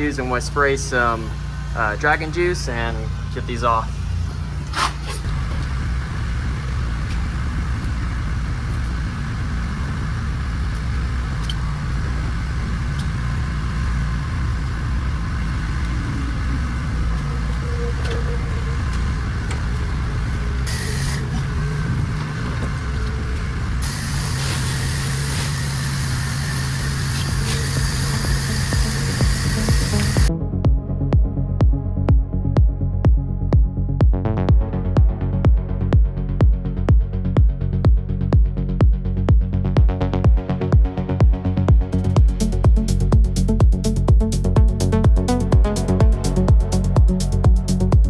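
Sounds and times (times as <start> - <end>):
engine running with low rumble: 0.0 - 48.0
water spray hissing: 20.7 - 21.4, 23.8 - 30.3.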